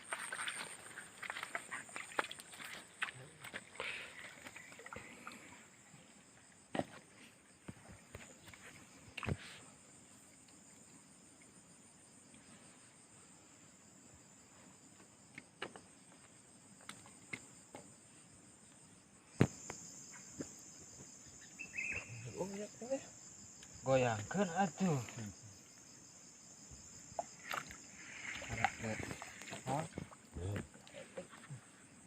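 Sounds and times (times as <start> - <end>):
insects trilling: 0.0 - 32.0.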